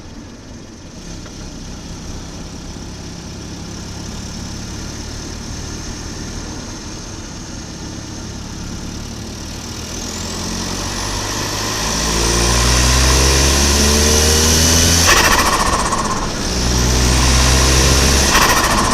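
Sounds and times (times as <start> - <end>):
car engine running: 0.0 - 18.9
turbo whistle: 10.9 - 18.9
turbo flutter: 11.2 - 18.9.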